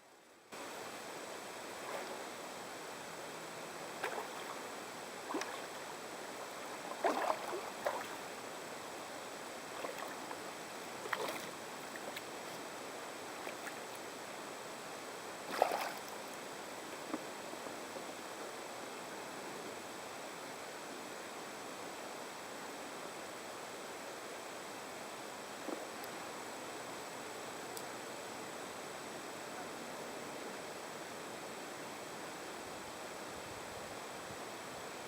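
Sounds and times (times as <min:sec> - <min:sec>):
steady hiss: 0:00.0 - 0:35.0
kayak splashes: 0:01.6 - 0:02.5, 0:03.9 - 0:12.6, 0:15.4 - 0:16.3.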